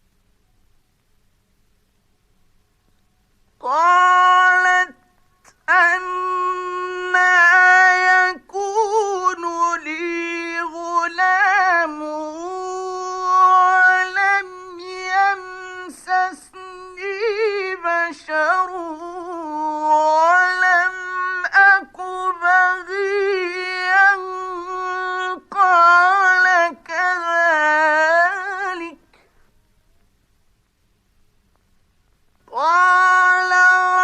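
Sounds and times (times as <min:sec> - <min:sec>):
man chanting melodically: 0:03.6 - 0:29.0, 0:32.5 - 0:34.0.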